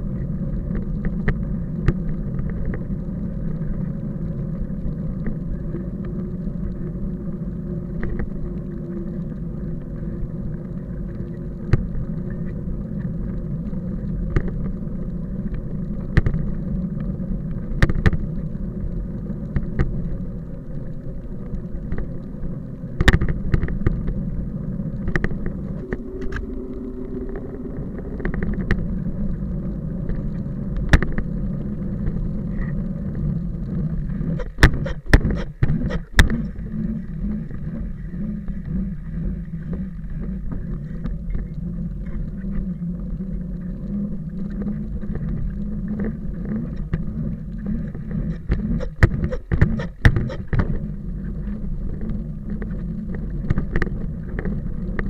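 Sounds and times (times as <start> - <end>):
low rumble of movement: 0.0 - 55.0.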